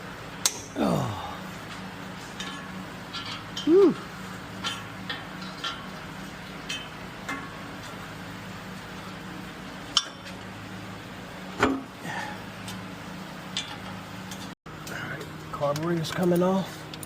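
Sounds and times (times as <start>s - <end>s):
steady low hum: 0.0s - 17.0s
metal clatter: 2.2s - 3.7s.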